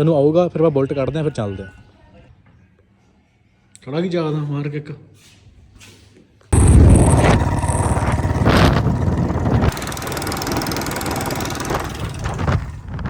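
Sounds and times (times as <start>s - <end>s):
motorcycle engine running: 6.6s - 13.0s.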